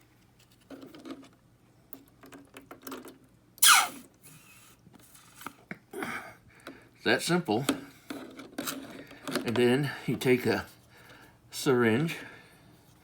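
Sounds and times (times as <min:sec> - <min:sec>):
squeal falling in pitch: 0:03.6 - 0:04.0.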